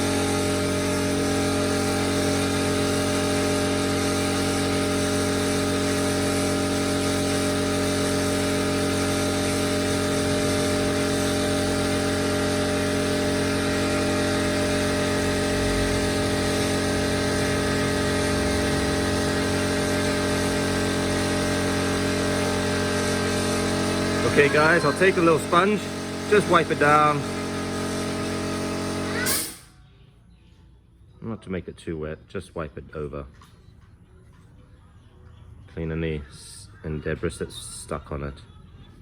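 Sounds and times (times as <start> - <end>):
air compressor motor humming: 0.0 - 29.7.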